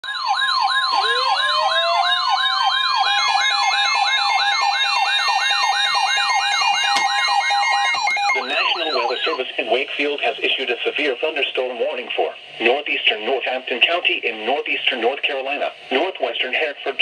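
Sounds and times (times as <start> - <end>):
sweeping siren tone: 0.0 - 9.4
winding up tone: 0.9 - 3.7.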